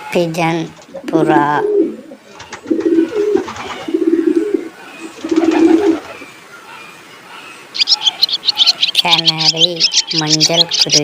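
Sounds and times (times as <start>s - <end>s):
pigeon cooing: 0.9s - 11.0s
small bird chirping: 2.4s - 11.0s.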